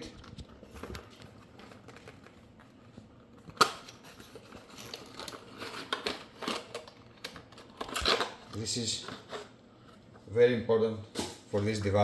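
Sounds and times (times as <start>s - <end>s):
packaging rustling: 0.0s - 9.6s.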